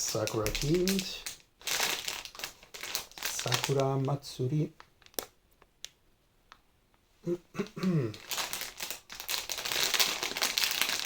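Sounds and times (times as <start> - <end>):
plastic packaging crinkling: 0.0 - 5.4, 8.1 - 11.0.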